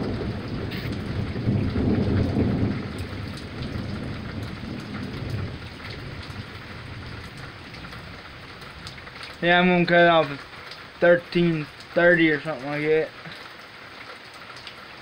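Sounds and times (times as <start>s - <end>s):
thunder rumbling: 0.0s - 10.4s
steady rain: 0.0s - 15.0s.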